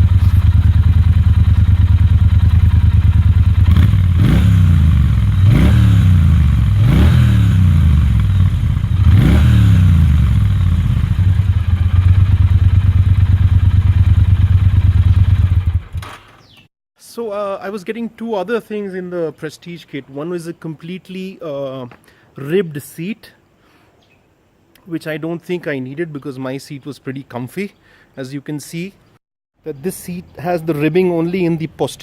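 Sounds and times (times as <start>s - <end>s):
motorcycle engine idling and revving: 0.0s - 16.6s.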